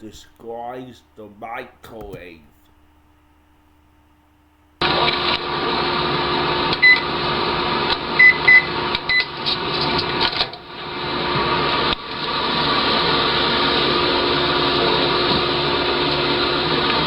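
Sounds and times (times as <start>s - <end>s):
microwave hum: 0.0s - 17.0s
microwave keypad beeps: 6.8s - 7.1s, 8.2s - 9.4s.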